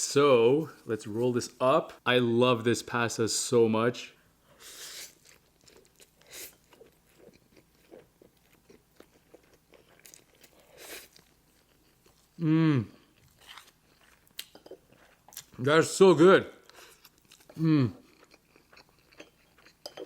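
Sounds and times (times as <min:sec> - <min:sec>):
person chewing: 0:04.7 - 0:12.4, 0:13.0 - 0:15.6, 0:16.6 - 0:20.0
person humming mmm: 0:12.4 - 0:13.1, 0:17.6 - 0:18.0.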